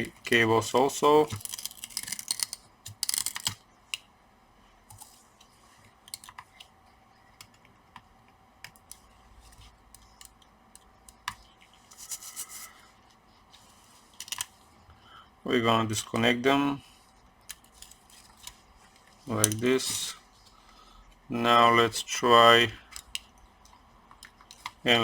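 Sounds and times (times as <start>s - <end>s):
faint clicks and scratching: 4.8s - 14.8s, 16.9s - 21.2s.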